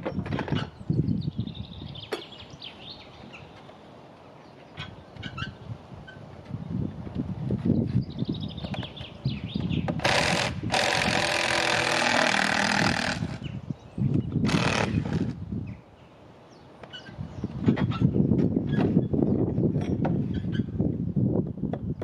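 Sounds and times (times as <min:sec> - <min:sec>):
power drill running: 0:10.0 - 0:13.4.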